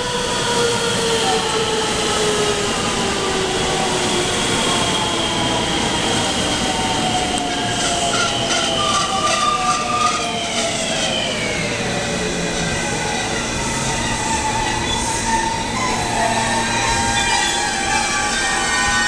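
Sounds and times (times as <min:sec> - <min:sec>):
wheels clicking over rail joints: 0:07.3 - 0:11.2.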